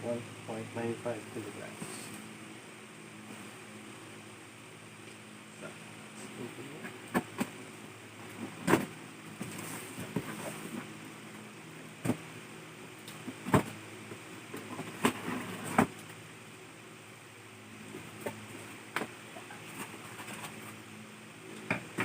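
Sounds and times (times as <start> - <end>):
steady low hum: 0.0 - 22.0
cardboard scraping and rustling: 8.4 - 10.9, 14.6 - 16.0.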